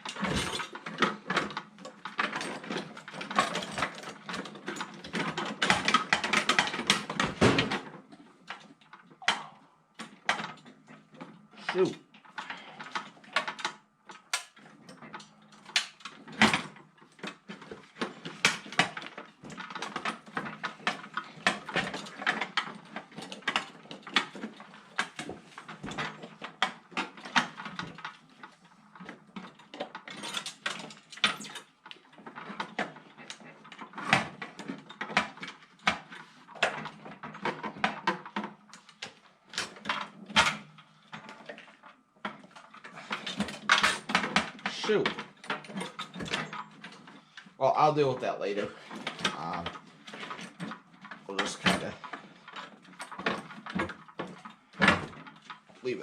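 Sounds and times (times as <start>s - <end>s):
metal tools clattering in toolbox: 0.0s - 7.9s, 12.2s - 28.2s, 29.0s - 40.6s, 42.3s - 47.2s.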